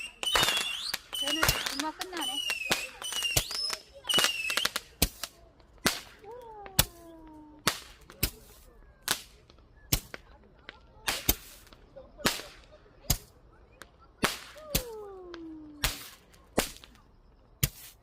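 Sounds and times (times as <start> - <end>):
firework falling whistle: 0.0 - 4.8
fireworks bangs: 0.0 - 18.0.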